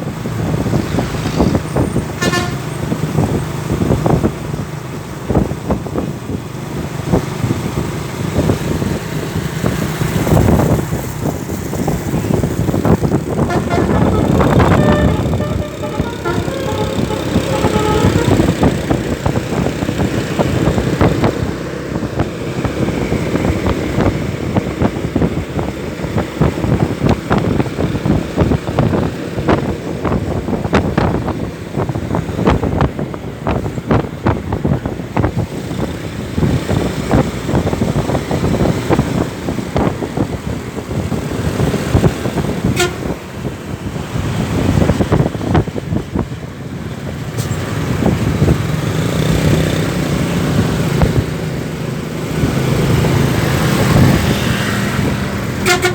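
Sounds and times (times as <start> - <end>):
bus engine and road noise: 0.0 - 55.9
multi-note bus horn toots: 2.2 - 2.8, 13.3 - 19.1, 42.6 - 43.3, 55.6 - 55.9.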